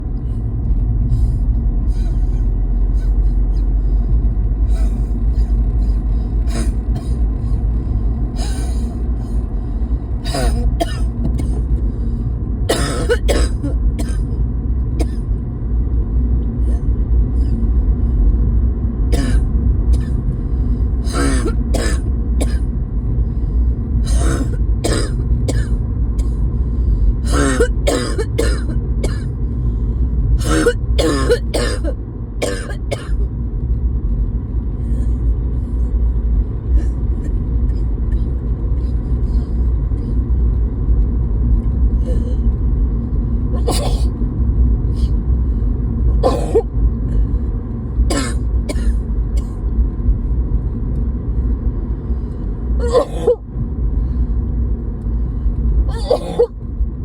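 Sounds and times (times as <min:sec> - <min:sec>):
steady low rumble: 0:00.0 - 0:57.0
person coughing: 0:06.5 - 0:07.2, 0:10.2 - 0:11.6, 0:12.7 - 0:14.2, 0:19.1 - 0:19.4, 0:21.1 - 0:22.6, 0:24.1 - 0:26.4, 0:27.3 - 0:29.3, 0:30.4 - 0:33.2, 0:43.6 - 0:44.1, 0:46.2 - 0:46.7, 0:48.1 - 0:49.5, 0:52.8 - 0:53.4, 0:55.9 - 0:56.5.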